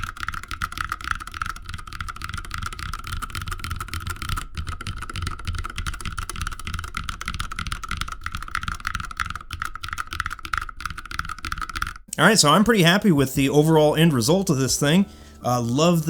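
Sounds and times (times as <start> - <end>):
mechanical keyboard typing: 0.0 - 12.1.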